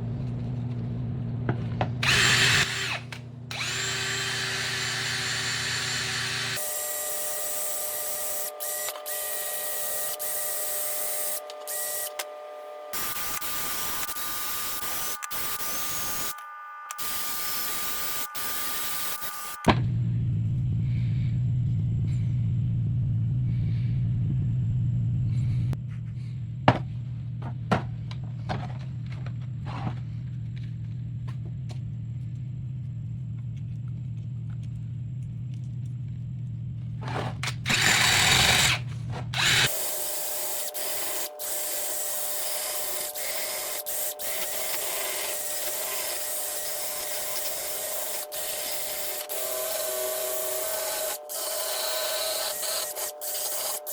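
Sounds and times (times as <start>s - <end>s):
electric drill humming: 2.0s - 19.7s, 37.4s - 53.9s
grinding burst: 37.0s - 39.9s
sanding disc hissing on wood: 39.7s - 53.9s.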